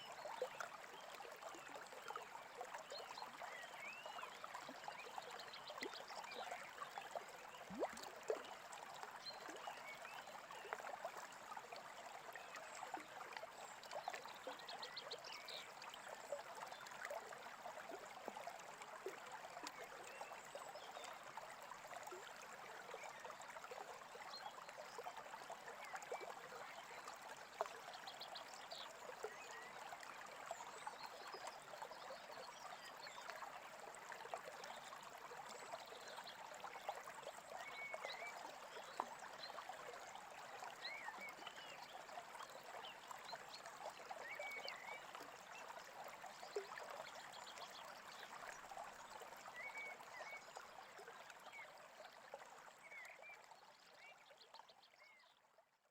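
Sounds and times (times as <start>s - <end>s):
brook trickling and babbling: 0.0s - 55.9s.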